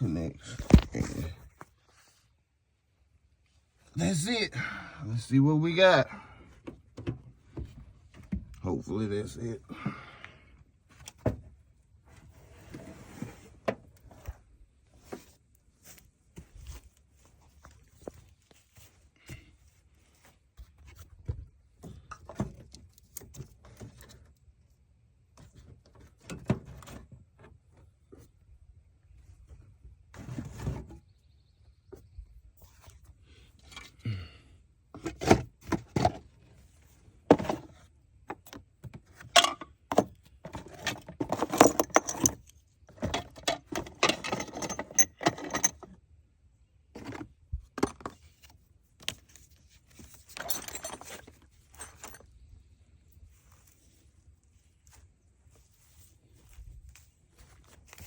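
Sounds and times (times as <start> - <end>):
knocks and clunks of handling: 0.4 - 1.8, 6.4 - 8.6, 10.9 - 12.9, 15.0 - 24.4, 25.4 - 28.4, 34.9 - 36.6, 37.2 - 46.0, 46.9 - 52.4.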